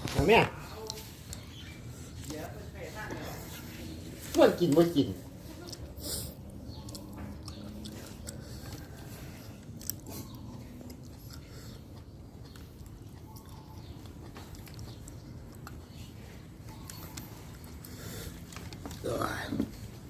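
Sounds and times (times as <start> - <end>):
person chewing raw meat: 5.6 - 19.1.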